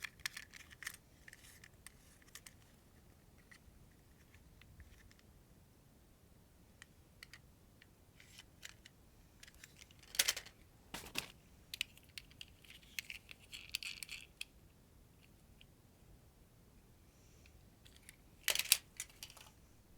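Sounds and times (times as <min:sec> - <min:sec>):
toy cars clicking and clattering: 0:00.0 - 0:02.6, 0:08.2 - 0:14.5, 0:17.9 - 0:19.5.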